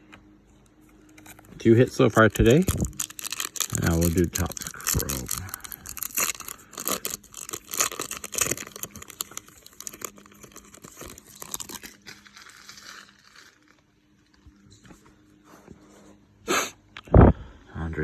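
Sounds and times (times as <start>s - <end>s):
wrapper crinkling and tearing: 1.1s - 14.8s.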